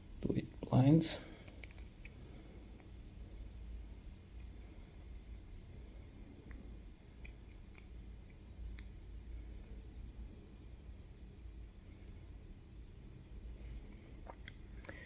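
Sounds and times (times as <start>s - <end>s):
metal lock parts clicking: 1.3s - 2.2s.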